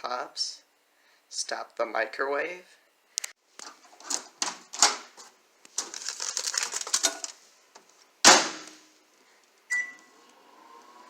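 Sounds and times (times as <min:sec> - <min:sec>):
paper bag crinkling: 0:03.6 - 0:07.5
keypad beep: 0:09.7 - 0:10.1.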